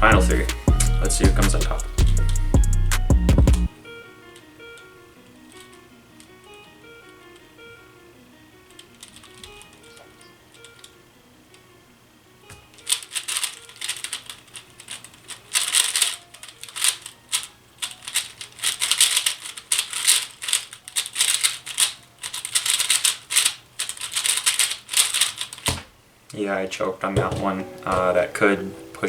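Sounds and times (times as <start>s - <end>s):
faint background music: 0.0s - 25.1s, 26.3s - 29.0s
plastic puzzle cube clicking: 8.7s - 10.9s, 12.8s - 25.8s.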